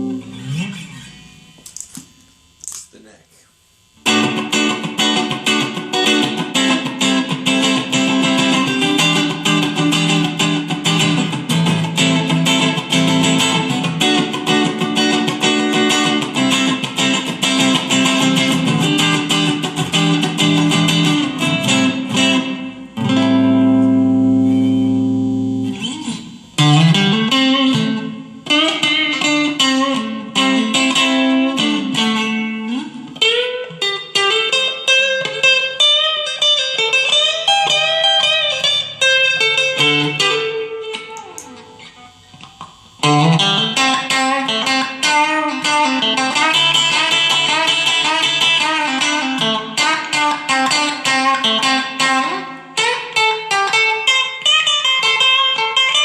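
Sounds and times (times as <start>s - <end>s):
clean electric guitar playing: 0.0s - 2.0s, 4.0s - 56.0s.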